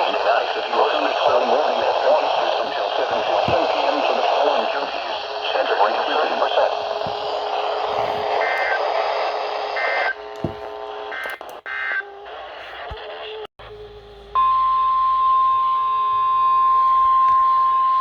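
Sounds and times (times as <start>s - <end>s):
radio static: 0.0s - 13.5s.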